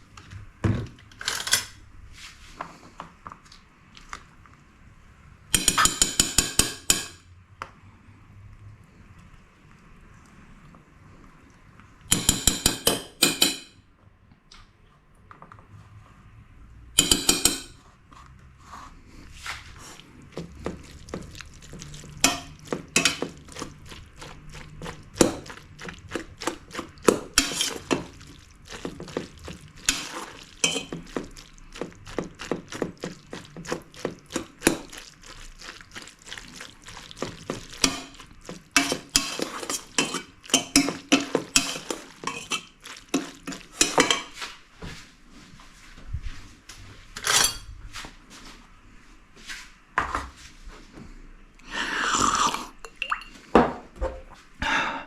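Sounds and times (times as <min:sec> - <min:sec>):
metal utensils clinking on cookware: 0:01.2 - 0:01.8, 0:05.6 - 0:07.2, 0:12.1 - 0:13.8, 0:17.0 - 0:17.8, 0:22.1 - 0:23.7, 0:29.8 - 0:31.0, 0:37.7 - 0:44.4, 0:47.2 - 0:47.7.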